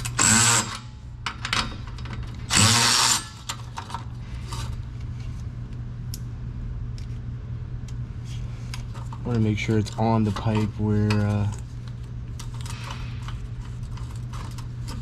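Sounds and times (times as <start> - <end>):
powered ratchet motor whirring: 0.0 - 0.8, 2.5 - 3.4
steady low hum: 0.0 - 15.0.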